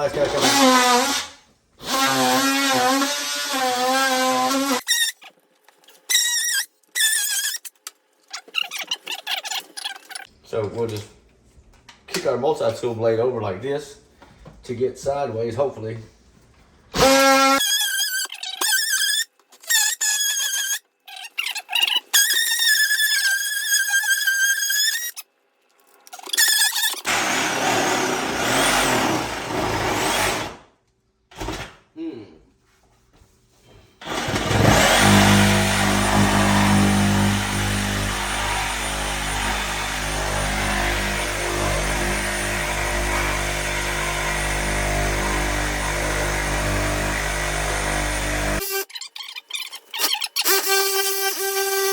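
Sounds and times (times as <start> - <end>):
oscillating multi-tool cutting: 34.0 - 51.9.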